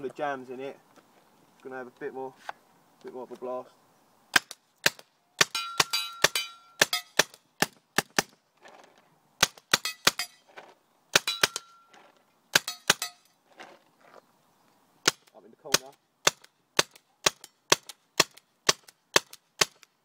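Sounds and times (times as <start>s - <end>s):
paintball gun firing: 4.4s - 8.4s, 11.1s - 11.7s, 15.0s - 19.9s
metallic ringing: 5.5s - 7.2s.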